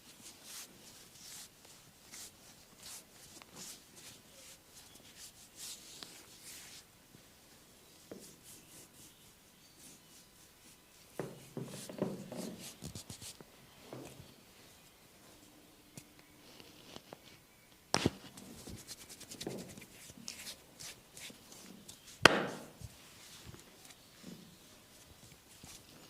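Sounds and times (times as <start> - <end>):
hands rubbing on skin: 2.1 - 6.8, 18.3 - 22.2.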